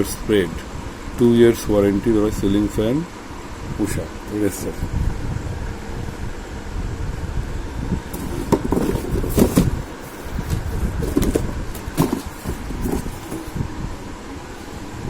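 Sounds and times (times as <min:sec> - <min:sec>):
packaging rustling: 0:08.1 - 0:13.6.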